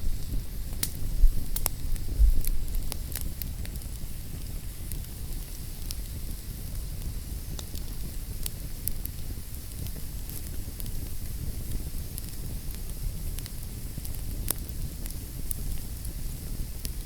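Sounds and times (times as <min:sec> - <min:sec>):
low rumble of burning: 0:00.0 - 0:17.0
wood fire crackling: 0:00.0 - 0:17.0.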